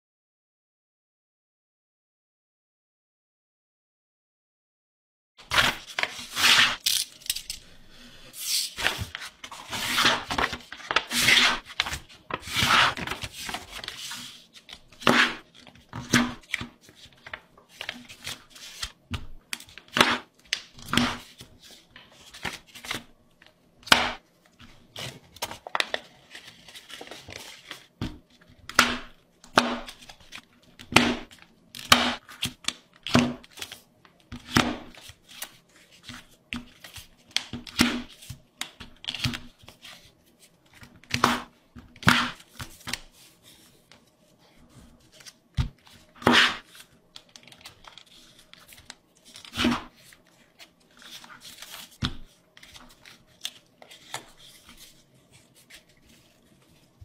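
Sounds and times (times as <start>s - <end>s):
paper crackling and rustling: 8.6s - 23.6s, 24.4s - 28.5s, 34.9s - 57.0s.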